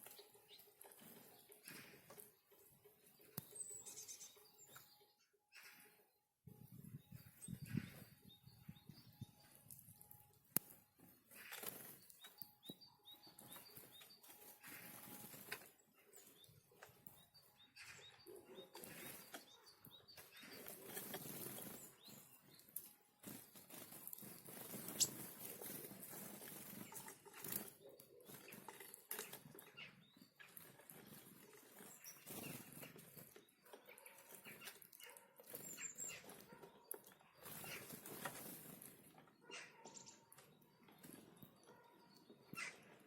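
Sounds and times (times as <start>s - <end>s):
bird wings fluttering: 11.4s - 12.1s, 23.2s - 27.7s.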